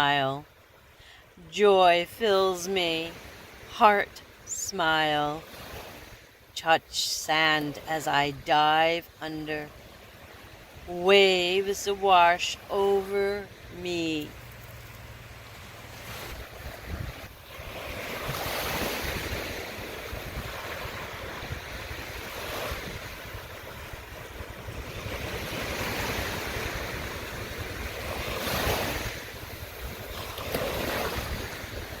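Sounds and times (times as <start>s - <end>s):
ocean surf washing onto beach: 0.0s - 32.0s
wind rumbling on microphone: 14.3s - 32.0s.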